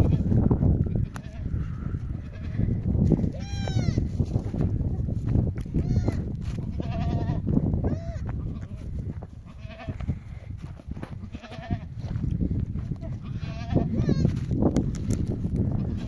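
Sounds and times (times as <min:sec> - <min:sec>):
sheep bleating: 0:01.0 - 0:02.8, 0:05.9 - 0:08.8, 0:09.5 - 0:10.0, 0:11.2 - 0:11.9, 0:13.2 - 0:14.3.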